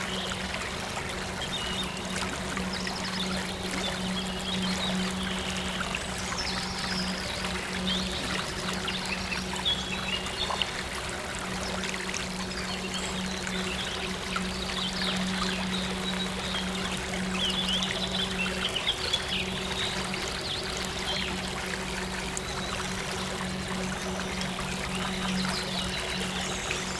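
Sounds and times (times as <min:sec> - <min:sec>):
low steady synth drone: 0:00.0 - 0:26.9
stream water trickling: 0:00.0 - 0:26.9.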